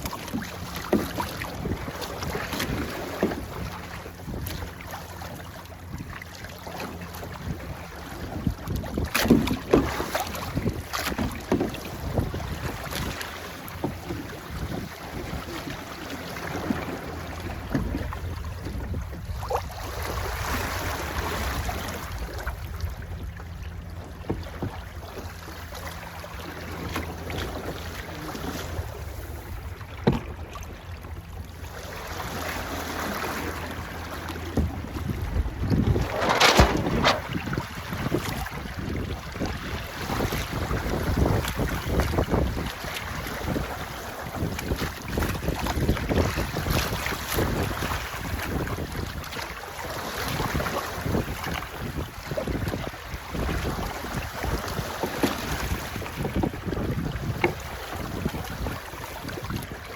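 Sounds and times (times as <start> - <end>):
water rushing along boat hull: 0.0 - 59.9
wind buffeting microphone: 7.1 - 15.8, 17.2 - 20.6, 33.8 - 43.8, 50.3 - 59.9
sharp knocks: 36.0 - 37.4.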